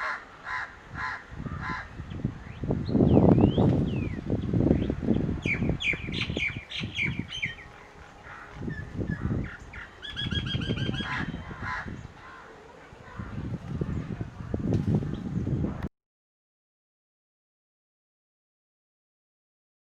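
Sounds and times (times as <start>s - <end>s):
wind buffeting microphone: 0.7s - 15.9s.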